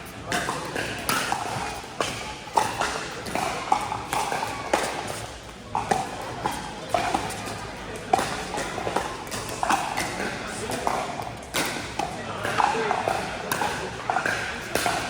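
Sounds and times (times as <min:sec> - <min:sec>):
paddles hitting plastic ball: 0:00.4 - 0:15.0.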